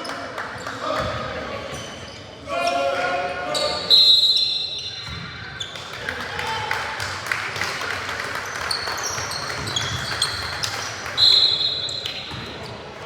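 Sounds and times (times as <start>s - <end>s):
sneakers squeaking on court: 8.5s - 10.8s.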